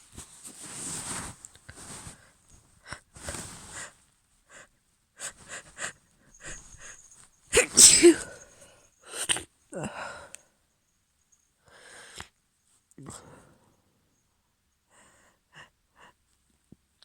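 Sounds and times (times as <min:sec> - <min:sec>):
woman sneezing: 0:07.5 - 0:09.4
woman sniffing: 0:07.6 - 0:10.0.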